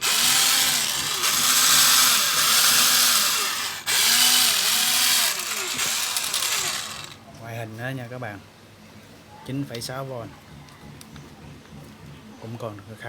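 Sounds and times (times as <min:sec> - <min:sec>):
cordless drill motor whirring: 0:00.0 - 0:07.2.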